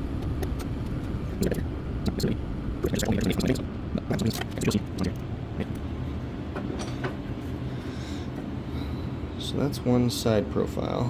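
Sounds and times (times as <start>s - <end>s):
low background rumble: 0.0s - 6.6s.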